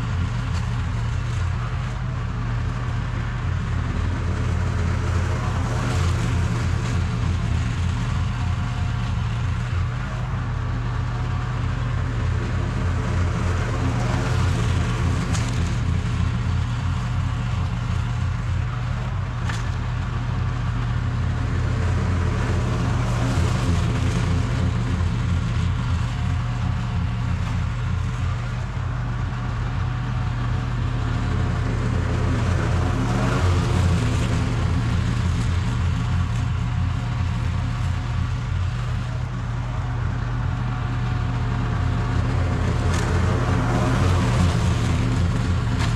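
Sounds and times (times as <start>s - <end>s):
lawn mower engine humming: 0.0s - 45.9s
mower blades cutting grass: 0.0s - 45.9s.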